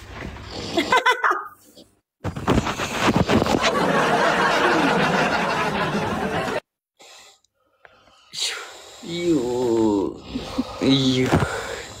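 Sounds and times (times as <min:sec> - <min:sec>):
people laughing loudly: 0:03.6 - 0:06.6.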